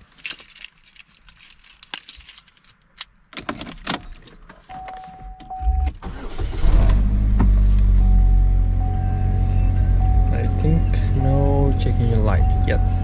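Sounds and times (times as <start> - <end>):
keys jangling and clicking: 0.0 - 4.4
electronic chime tone: 8.0 - 13.0.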